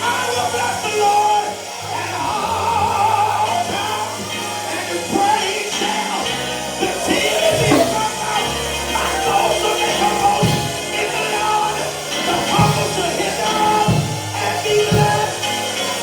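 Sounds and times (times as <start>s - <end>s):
held bass notes: 0.0s - 16.0s
voices singing: 0.0s - 16.0s
drum strokes: 6.8s - 16.0s.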